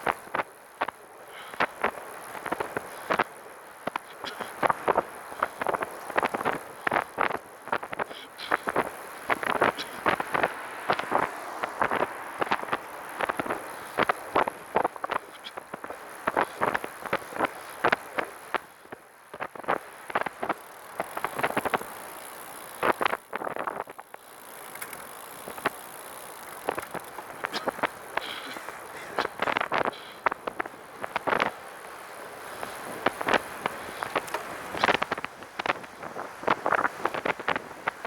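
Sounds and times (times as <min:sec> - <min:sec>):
tyre and wind noise: 0:00.0 - 0:38.0
trike rattling clicks: 0:19.4 - 0:28.6, 0:33.0 - 0:35.9.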